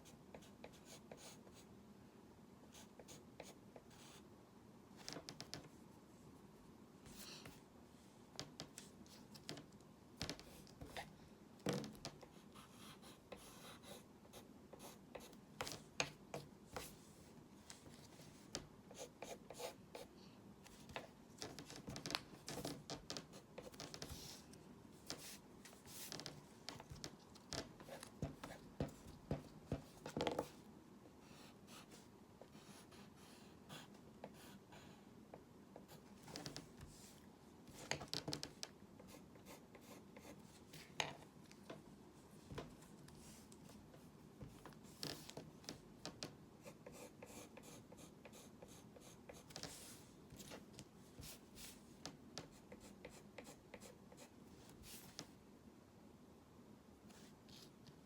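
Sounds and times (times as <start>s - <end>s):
pencil scratching on paper: 0.0s - 1.6s, 12.2s - 20.1s, 46.6s - 50.0s.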